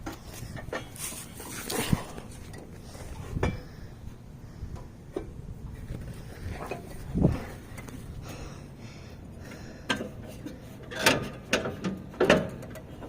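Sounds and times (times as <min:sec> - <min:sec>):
metallic clanks and knocks: 0:10.9 - 0:13.0.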